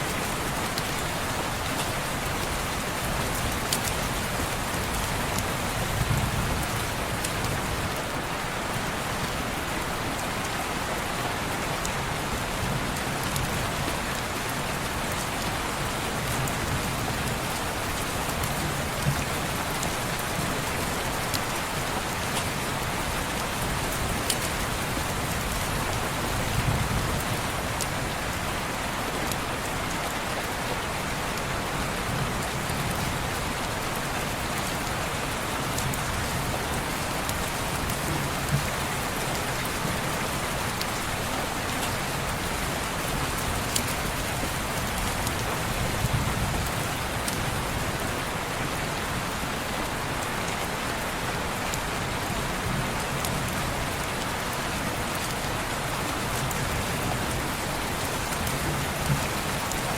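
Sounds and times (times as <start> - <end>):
rain on window glass: 30.7 - 49.2, 49.8 - 59.9.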